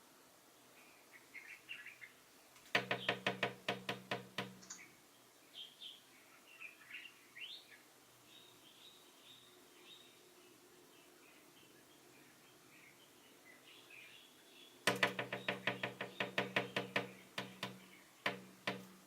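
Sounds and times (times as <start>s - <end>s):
bird pecking at window glass: 2.8s - 4.7s, 14.9s - 19.0s.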